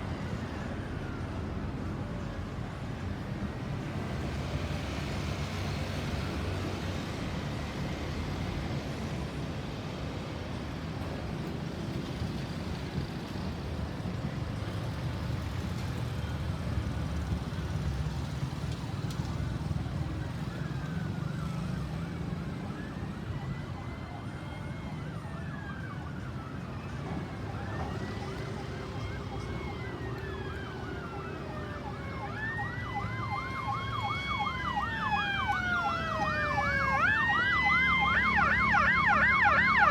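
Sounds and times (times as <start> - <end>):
emergency vehicle sirens wailing: 0.0 - 39.9
road traffic rumble: 0.0 - 39.9
siren fast yelp: 30.9 - 39.9.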